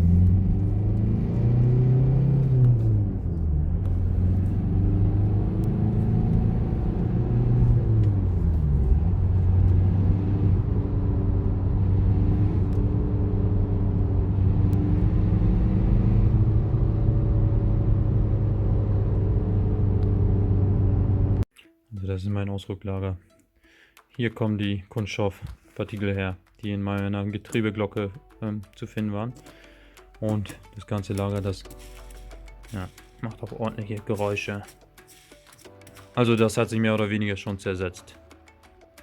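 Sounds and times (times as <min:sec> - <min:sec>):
car engine idling: 0:00.0 - 0:21.4.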